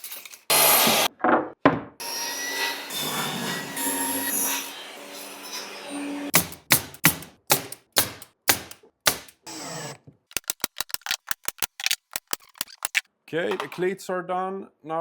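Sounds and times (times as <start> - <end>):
rapid sharp clicks: 6.4 - 13.0.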